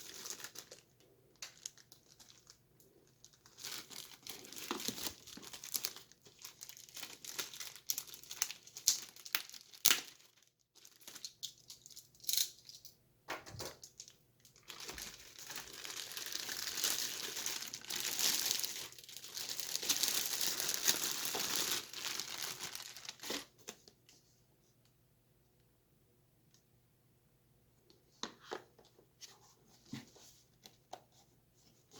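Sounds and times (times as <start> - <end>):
packaging crinkling and tearing: 0.0 - 12.6, 14.0 - 23.9.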